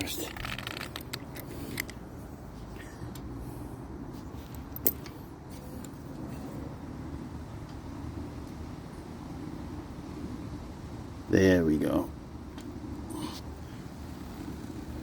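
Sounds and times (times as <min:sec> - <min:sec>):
small clicks of brake hardware: 0:00.3 - 0:02.0, 0:04.5 - 0:05.2.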